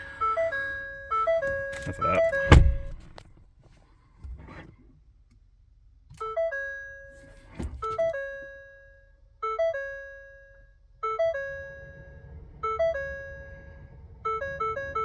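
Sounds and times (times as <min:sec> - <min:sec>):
short knock: 0:02.4 - 0:03.2.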